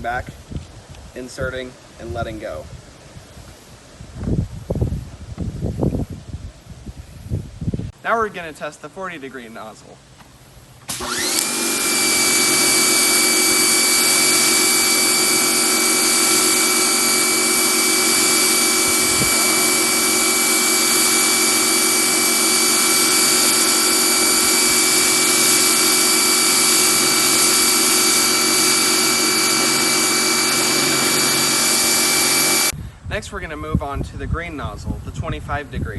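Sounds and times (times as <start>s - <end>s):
pressure washer motor whine: 10.9s - 32.8s.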